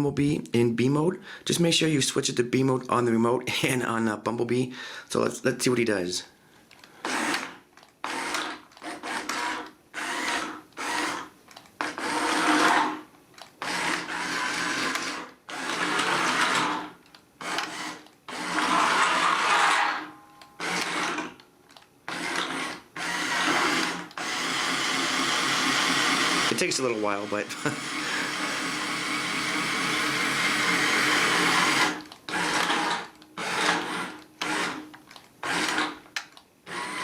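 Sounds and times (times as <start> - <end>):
toy motors and gears whirring: 7.0 - 20.0, 20.6 - 37.0.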